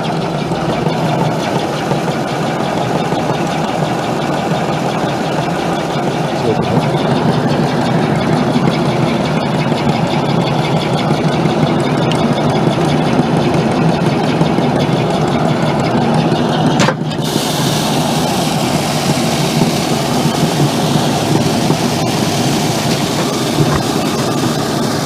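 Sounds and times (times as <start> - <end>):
grain machinery running: 0.0 - 25.0
strong hiss: 17.2 - 25.0.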